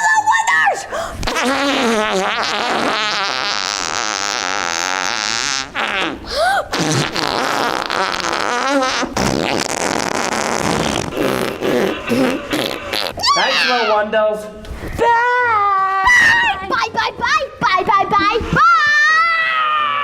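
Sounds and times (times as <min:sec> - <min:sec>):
buzzy fart-like noises: 0:01.2 - 0:13.3.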